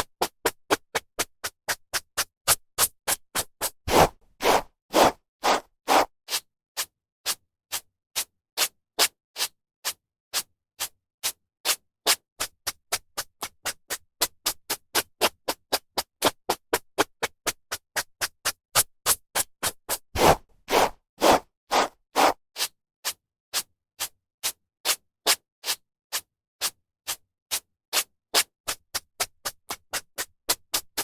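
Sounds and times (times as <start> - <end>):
hairbrush swishing through hair: 3.9 - 6.1, 20.2 - 22.4.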